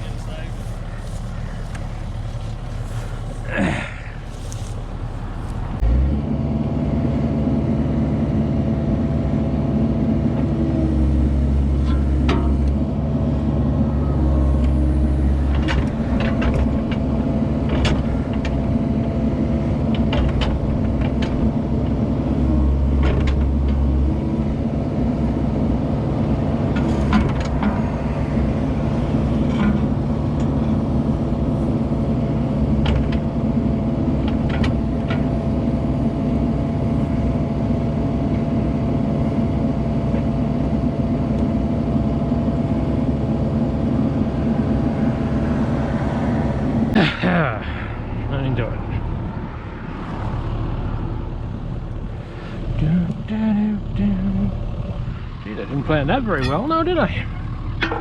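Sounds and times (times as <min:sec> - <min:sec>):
heavy diesel engine running: 0:00.0 - 0:58.0
metal clanks and knocks: 0:57.4 - 0:58.0.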